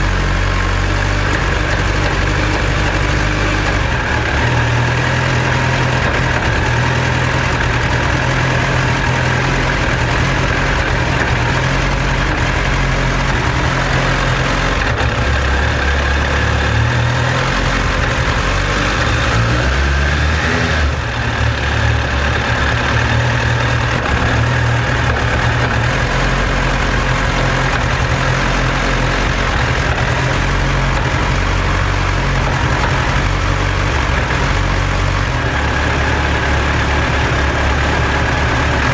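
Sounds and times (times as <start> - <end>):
motorcycle engine idling: 0.0 - 19.4, 20.8 - 38.9
engine rattling: 0.0 - 38.9.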